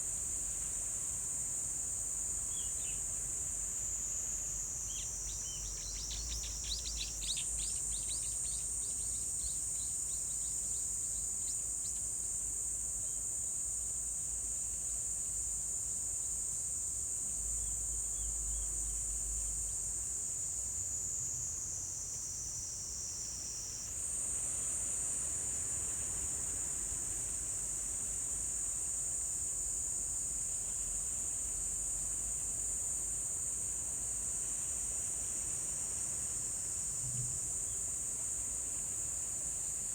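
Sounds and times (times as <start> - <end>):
insects trilling: 3.7 - 12.4.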